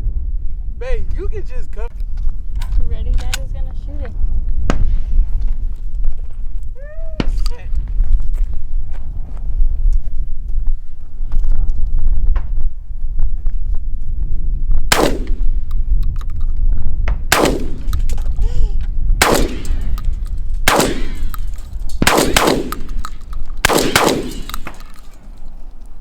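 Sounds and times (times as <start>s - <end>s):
low wind rumble on microphone: 0.0s - 26.0s
gunshots with ringing tail: 14.9s - 15.7s, 17.3s - 18.2s, 19.2s - 25.5s.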